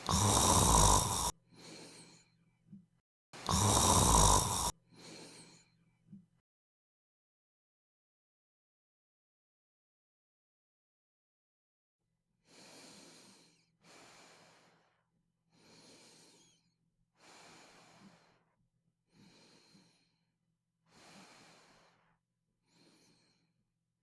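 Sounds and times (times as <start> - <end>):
person breathing slowly in sleep: 0.0 - 2.3, 3.4 - 5.7, 12.5 - 16.6, 17.2 - 18.4, 19.1 - 20.2, 20.9 - 22.1, 22.7 - 23.5.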